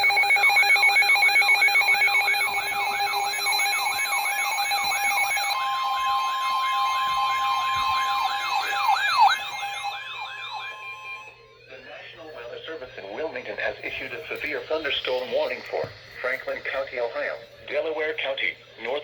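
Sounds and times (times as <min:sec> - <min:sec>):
electronic siren tone sweeping: 0:00.0 - 0:11.6
rapidly pulsing beeps: 0:00.0 - 0:11.8
steady alarm tone: 0:00.0 - 0:17.1.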